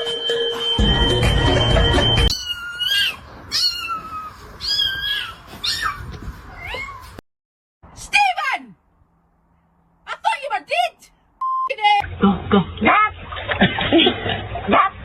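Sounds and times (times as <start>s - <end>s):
cat meowing: 2.3s - 7.2s.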